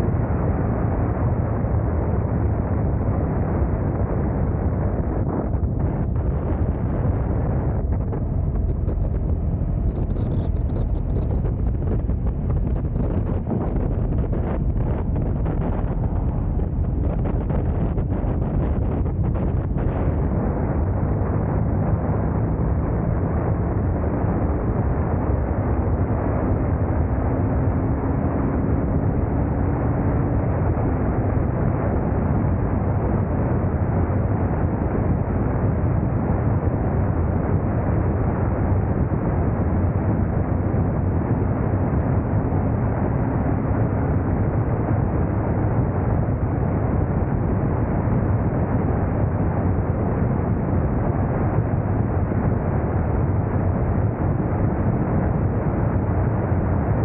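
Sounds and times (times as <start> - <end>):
wind rushing over microphone: 0.0 - 57.0
faint motorcycle engine hum: 5.6 - 20.4.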